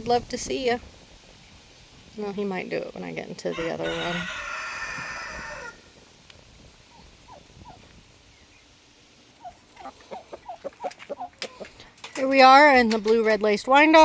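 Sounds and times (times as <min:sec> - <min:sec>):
rooster crowing: 0:03.5 - 0:05.9
chickens clucking: 0:03.5 - 0:08.5, 0:09.3 - 0:14.0.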